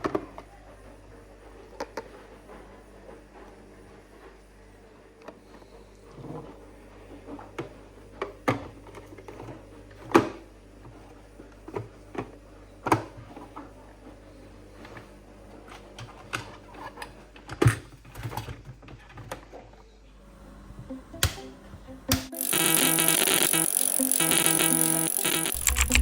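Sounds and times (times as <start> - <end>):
small hard objects clicking: 22.4 - 26.0.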